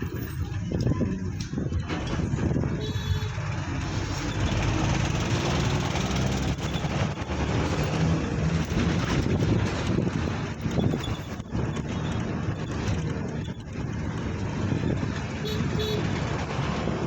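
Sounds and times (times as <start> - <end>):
road traffic noise: 0.0 - 17.0
vehicle engine drone: 0.0 - 17.0.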